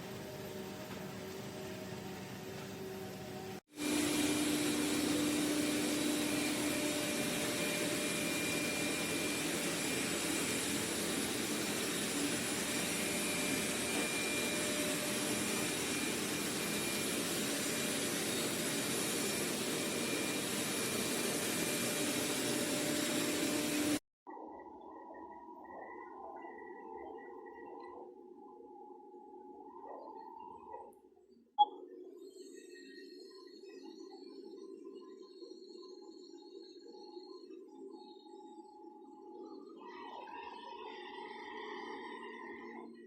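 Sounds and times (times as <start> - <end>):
robot vacuum motor whirring: 3.8 - 24.0.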